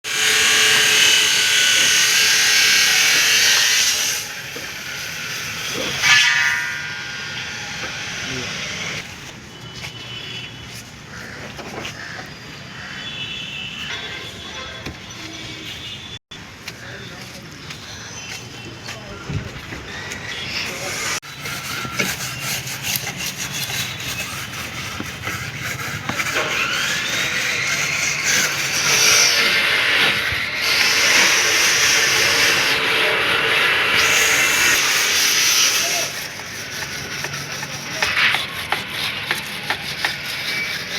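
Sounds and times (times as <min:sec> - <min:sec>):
power tool whining: 0:19.9 - 0:40.9
rubbing or scraping strokes: 0:20.2 - 0:40.9.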